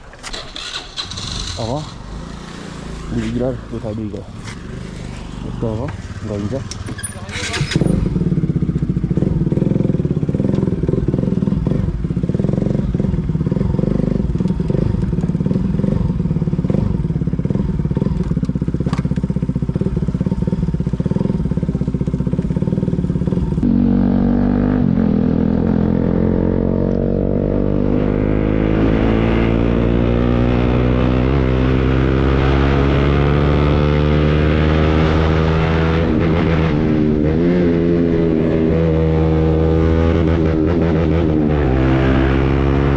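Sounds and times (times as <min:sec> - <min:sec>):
motorcycle engine revving: 0:00.2 - 0:42.9.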